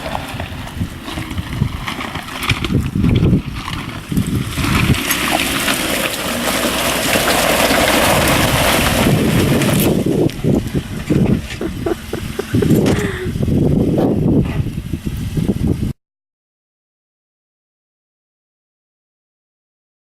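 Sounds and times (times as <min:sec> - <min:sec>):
water and mud splashing: 0:00.0 - 0:13.6
car engine rumble: 0:00.0 - 0:15.6.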